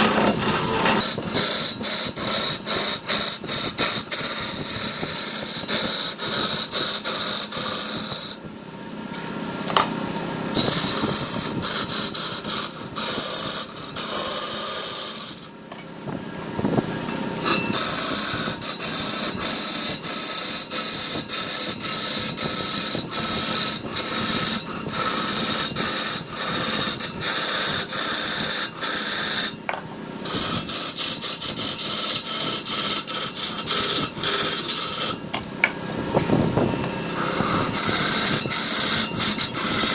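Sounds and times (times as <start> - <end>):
lathe tool scraping wood: 0.0 - 8.4, 9.6 - 15.7, 16.8 - 39.9.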